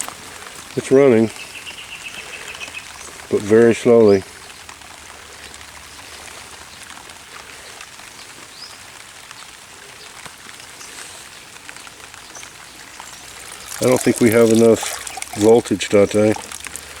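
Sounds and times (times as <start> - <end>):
water splashing and trickling: 12.4 - 17.0.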